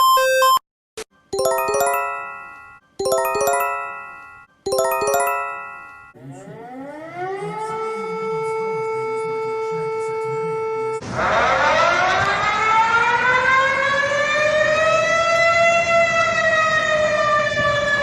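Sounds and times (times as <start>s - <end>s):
electronic multi-note chime: 1.4s - 6.2s
siren wailing: 6.2s - 15.3s.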